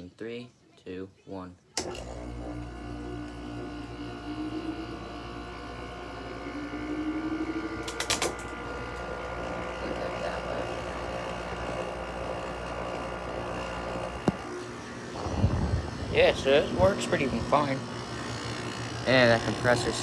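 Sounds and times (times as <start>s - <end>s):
air conditioner clicks: 1.8s - 2.1s, 7.7s - 9.8s
air conditioner compressor hum: 1.8s - 20.0s.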